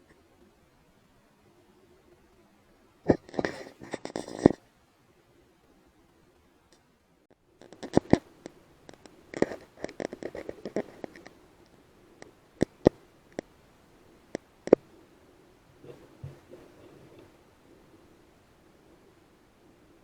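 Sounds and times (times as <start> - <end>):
sharp irregular clicks and knocks: 3.1 - 4.6, 7.6 - 13.5.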